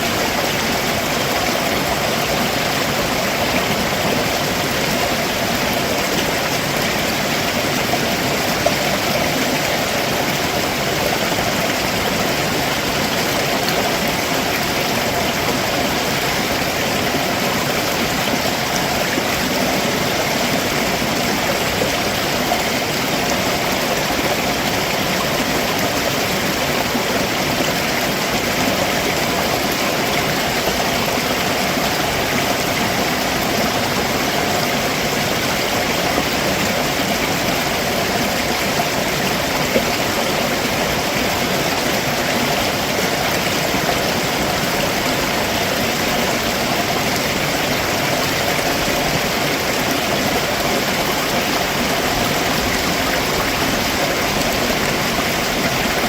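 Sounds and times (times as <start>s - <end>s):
stream water rushing over rocks: 0.0s - 56.0s.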